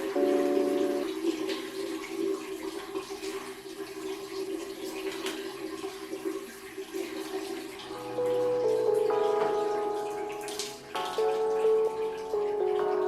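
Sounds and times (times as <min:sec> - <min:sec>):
soft background music chord: 0:00.0 - 0:01.5, 0:07.8 - 0:13.0
tap water running: 0:00.0 - 0:13.0.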